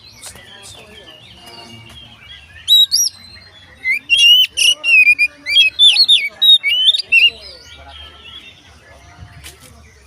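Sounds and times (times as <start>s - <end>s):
bird singing whistled notes: 0.0s - 10.0s.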